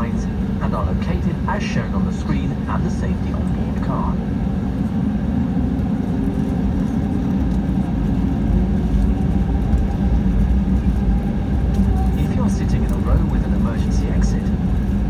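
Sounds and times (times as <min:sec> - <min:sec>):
faint hum tones: 0:00.0 - 0:06.9
aircraft cabin rumble: 0:00.0 - 0:15.0.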